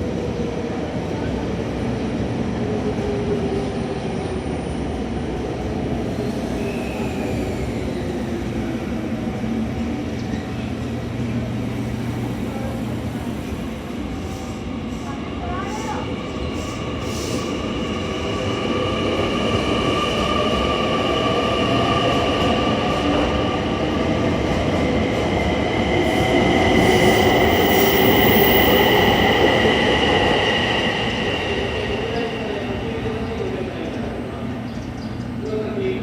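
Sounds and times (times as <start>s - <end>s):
train rumble: 0.0s - 36.0s
train wheels squealing: 6.0s - 8.4s, 15.6s - 18.3s, 26.0s - 33.5s.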